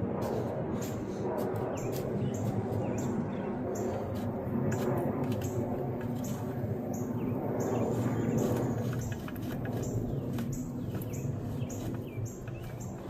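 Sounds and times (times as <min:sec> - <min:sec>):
steady low hum: 0:00.0 - 0:13.0
bird chirping: 0:06.2 - 0:13.0.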